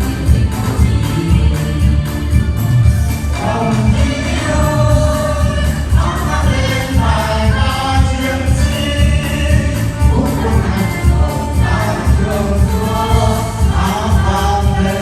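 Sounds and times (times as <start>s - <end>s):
backing track with heavy bass beat: 0.0s - 15.0s
voices singing together: 0.0s - 15.0s.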